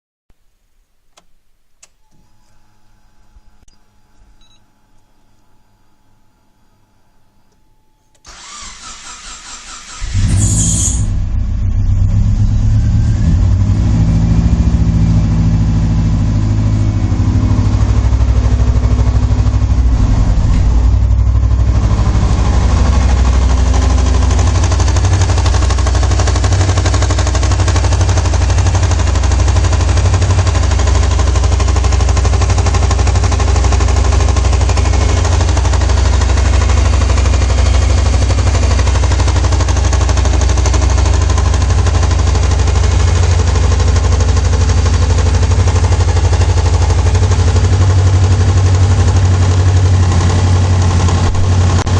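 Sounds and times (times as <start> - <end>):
engine starter cranking: 8.2 - 11.2
car engine idling with knock: 13.4 - 51.9.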